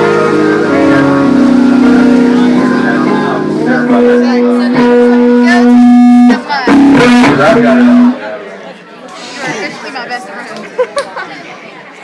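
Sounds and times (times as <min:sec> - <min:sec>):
amplified band music: 0:00.0 - 0:08.3.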